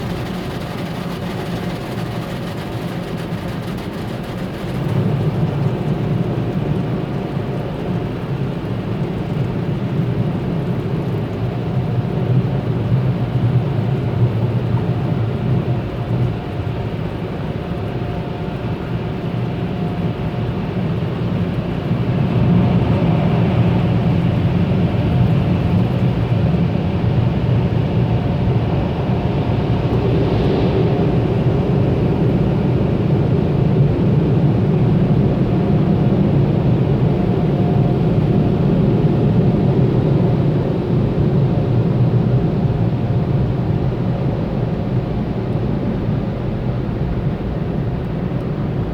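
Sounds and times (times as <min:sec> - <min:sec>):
car wash machinery rumbling: 0:00.0 - 0:08.5.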